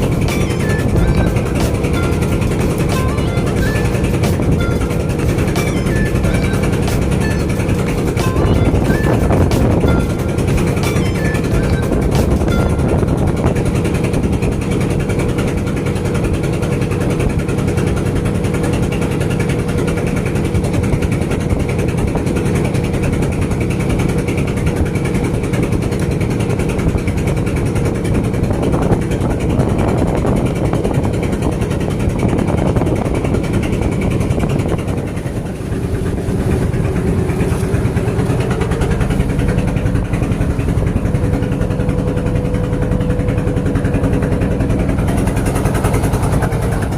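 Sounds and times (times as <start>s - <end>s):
engine droning: 0.0s - 46.9s.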